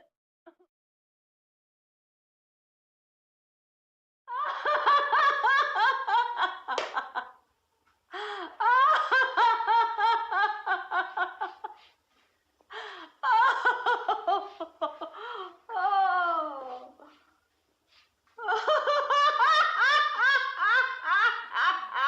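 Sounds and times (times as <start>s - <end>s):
woman laughing: 4.3s - 7.3s, 8.1s - 11.9s, 12.7s - 17.2s, 18.4s - 22.0s.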